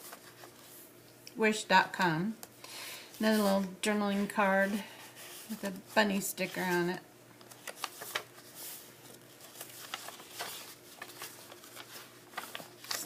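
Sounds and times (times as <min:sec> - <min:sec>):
paper pages rustling: 0:00.0 - 0:00.8, 0:04.6 - 0:13.0
faint steady hum: 0:00.0 - 0:13.0.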